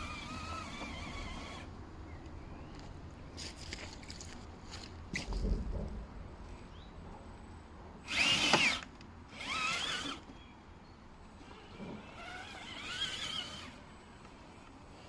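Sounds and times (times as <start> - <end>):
toy car electric motor whining: 0.0 - 1.7, 8.1 - 10.3, 11.4 - 15.0.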